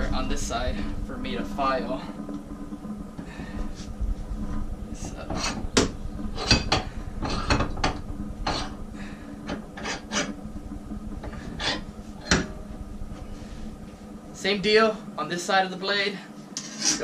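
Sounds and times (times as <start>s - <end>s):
hand file scraping steel blade: 16.6s - 17.0s.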